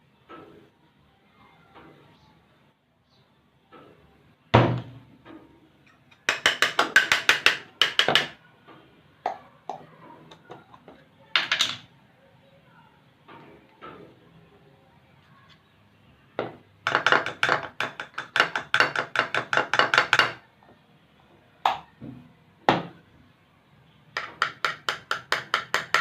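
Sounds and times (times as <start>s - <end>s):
object thump: 4.6s - 5.0s.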